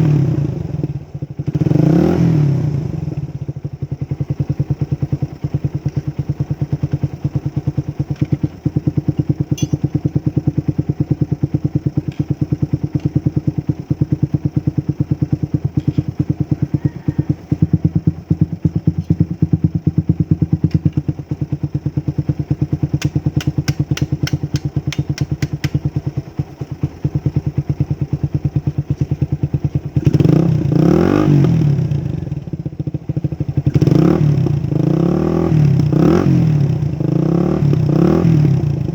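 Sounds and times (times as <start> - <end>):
motorcycle engine idling: 0.0 - 38.9
motorcycle throttle blips: 5.6 - 10.5, 11.4 - 16.6, 17.5 - 34.9.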